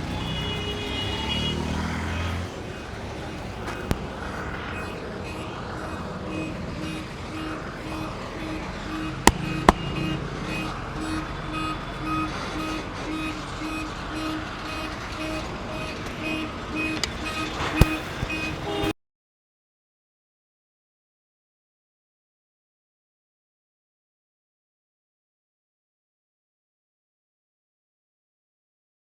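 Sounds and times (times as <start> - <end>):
street traffic noise: 0.0 - 19.0.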